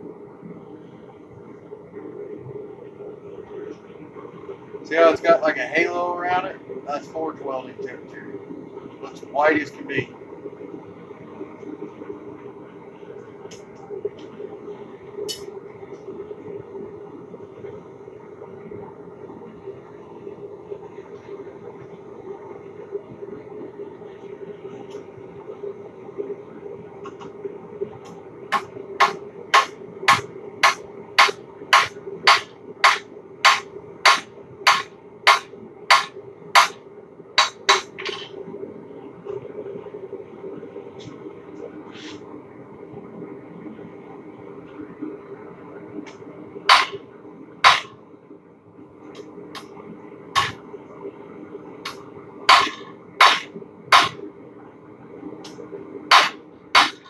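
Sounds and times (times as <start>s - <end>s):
steady hum: 0.0s - 57.0s
hammer striking steel on anvil: 28.5s - 36.8s, 37.4s - 38.3s, 46.7s - 47.0s, 47.6s - 48.0s, 50.4s - 50.6s, 51.9s - 54.2s, 56.1s - 57.0s.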